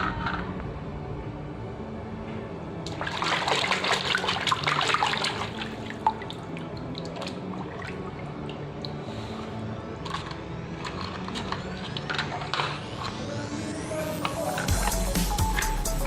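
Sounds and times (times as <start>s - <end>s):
quiet background music: 0.0s - 16.0s
water drips: 2.8s - 12.8s
water splashing and trickling: 2.9s - 13.3s, 14.2s - 16.0s.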